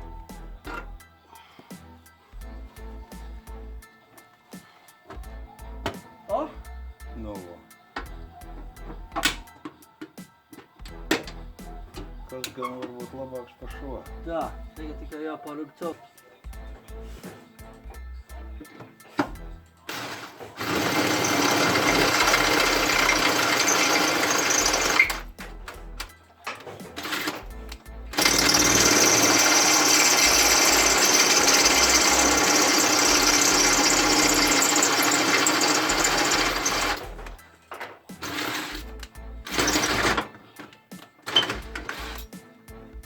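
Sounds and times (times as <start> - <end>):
power tool rattling: 19.9 - 25.3, 26.5 - 27.5, 28.1 - 40.4, 41.3 - 42.3.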